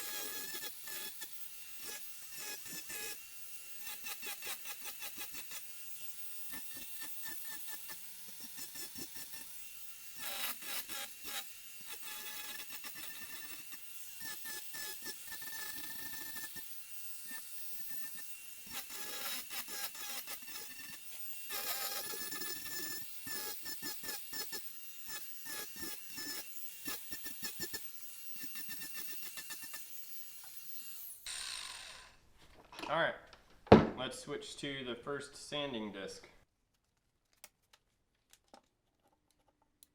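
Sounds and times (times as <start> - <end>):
burr disc rasping into wood: 0.0 - 31.4
angle grinder whining: 0.0 - 32.2.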